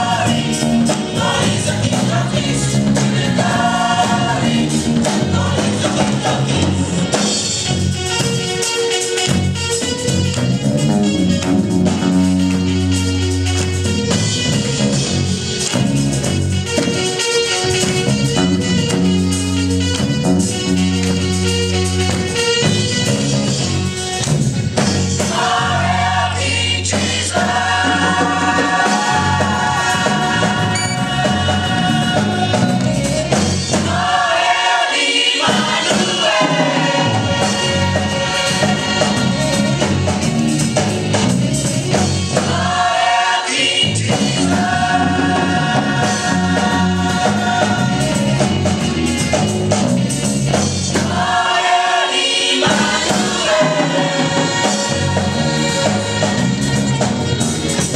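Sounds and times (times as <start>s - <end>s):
gospel choir singing: 0.0s - 9.2s, 24.8s - 57.9s
instrumental accompaniment: 0.0s - 57.9s.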